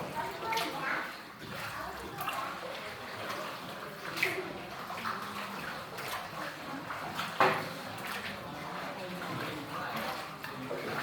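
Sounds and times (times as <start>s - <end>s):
water lapping around a boat: 0.0s - 11.0s
sharp splash or knock: 7.0s - 8.2s.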